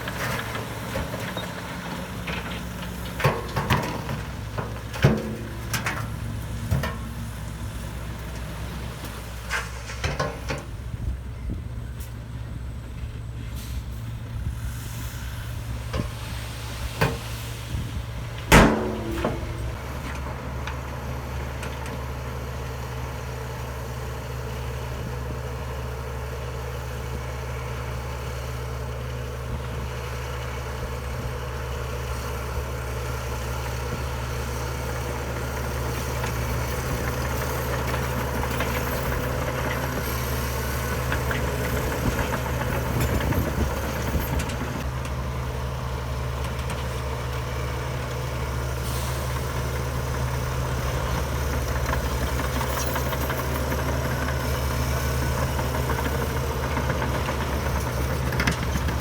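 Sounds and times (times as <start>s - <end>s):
heavy diesel engine droning: 0.0s - 59.0s
light metal clanks: 18.4s - 20.8s.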